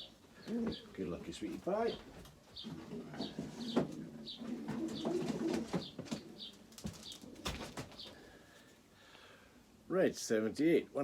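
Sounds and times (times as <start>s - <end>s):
pigeons cooing: 2.5s - 8.6s.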